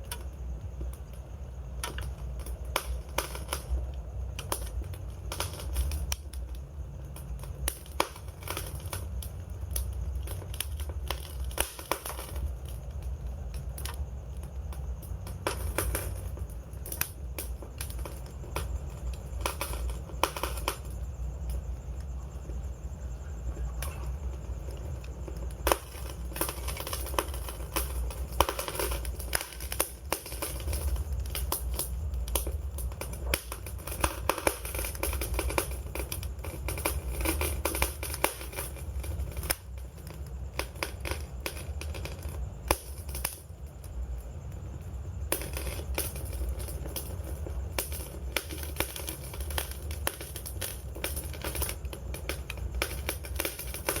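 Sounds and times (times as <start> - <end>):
steady low rumble: 0.0 - 37.6
campfire crackling: 0.0 - 54.0
fire pops and snaps: 0.0 - 54.0.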